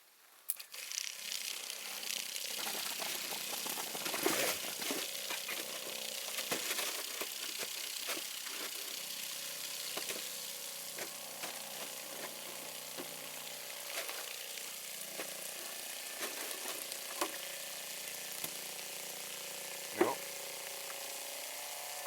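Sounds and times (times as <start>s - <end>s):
electric water pump humming: 0.0s - 22.0s
water hissing through pump: 0.4s - 22.0s
small clicks: 0.5s - 2.4s.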